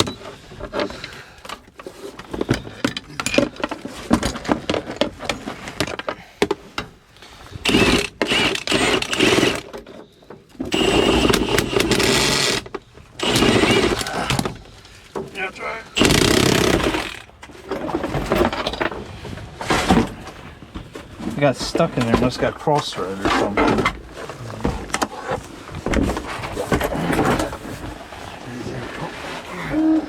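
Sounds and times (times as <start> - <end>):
handheld power tool running: 7.6 - 9.8, 10.7 - 14.4, 15.9 - 17.4.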